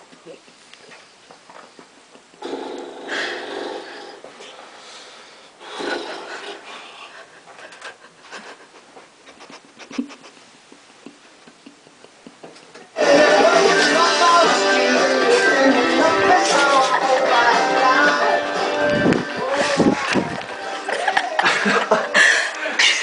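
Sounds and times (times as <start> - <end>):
person snoring: 2.4 - 7.1
loud music: 13.0 - 23.0.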